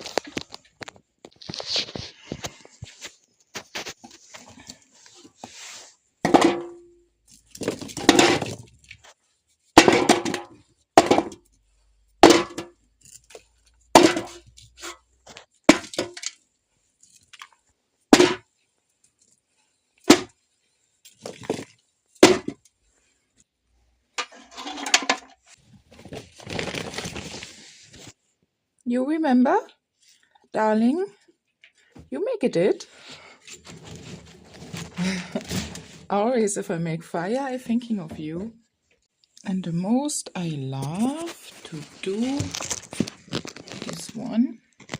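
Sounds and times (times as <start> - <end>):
wood crackling: 40.9 - 44.9.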